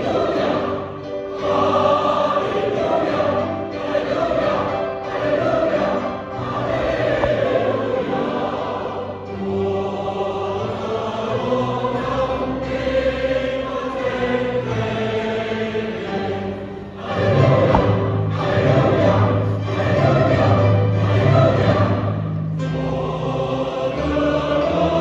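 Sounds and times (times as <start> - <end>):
choir singing a hymn: 0.0 - 25.0.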